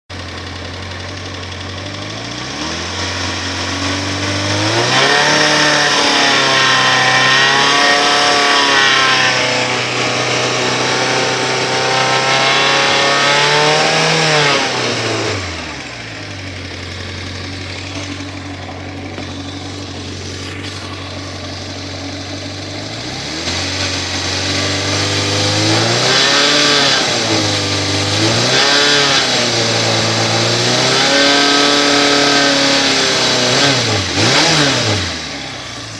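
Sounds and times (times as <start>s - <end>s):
exhaust ticking rattle: 0.1s - 35.9s
motorcycle engine revving: 0.1s - 35.9s.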